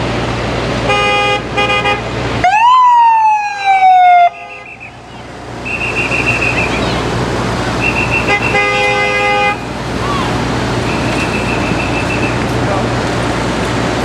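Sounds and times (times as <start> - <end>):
street traffic: 0.0 - 14.0
ambulance horn blasts: 0.8 - 2.1, 4.0 - 7.1, 7.8 - 9.7, 10.9 - 12.4
siren wail: 2.4 - 7.2.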